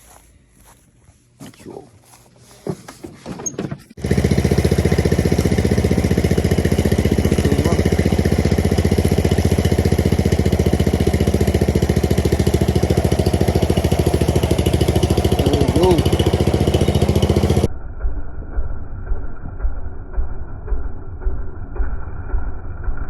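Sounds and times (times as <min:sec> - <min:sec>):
vehicle engine idling: 0:03.9 - 0:17.7.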